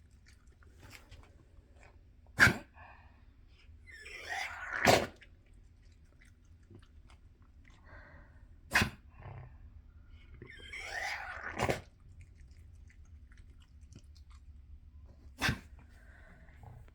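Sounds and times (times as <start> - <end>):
dog coughing: 2.4 - 2.7, 8.7 - 9.0, 15.4 - 15.8.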